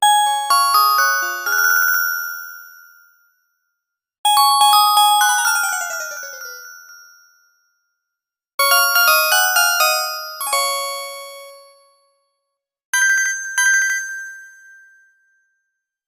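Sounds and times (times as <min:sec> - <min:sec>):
bell-like phone ringtones: 0:04.3 - 0:07.3
falling chime jingle: 0:05.4 - 0:07.0.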